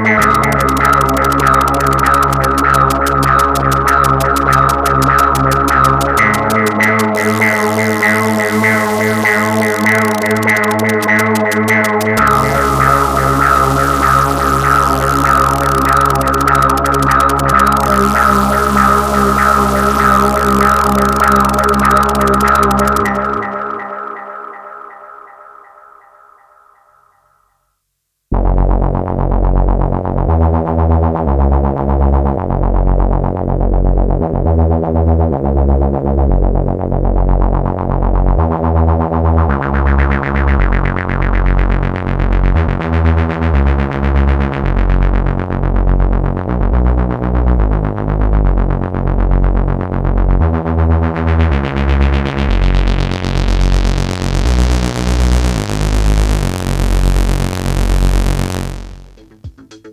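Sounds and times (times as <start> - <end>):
synthesizer bass pattern: 0.0 - 26.8, 39.5 - 43.5.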